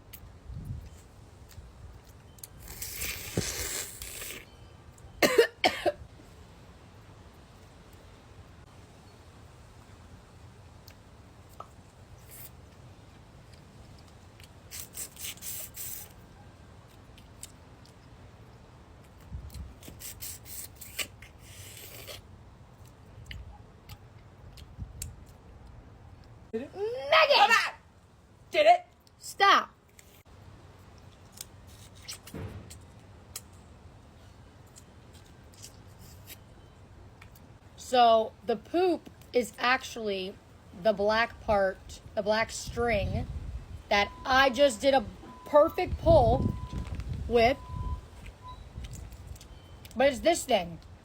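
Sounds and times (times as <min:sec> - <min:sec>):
person coughing: 0:05.2 - 0:06.0.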